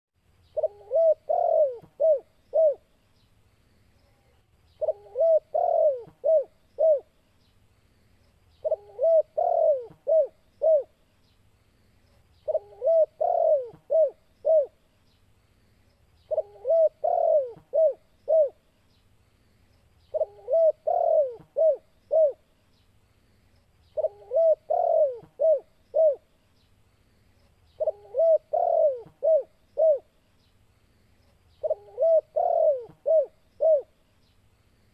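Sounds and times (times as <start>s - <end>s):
dove cooing: 0.5s - 2.9s, 4.8s - 7.1s, 8.6s - 11.0s, 12.4s - 14.8s, 16.3s - 18.6s, 20.1s - 22.4s, 24.0s - 26.3s, 27.8s - 30.1s, 31.6s - 34.0s.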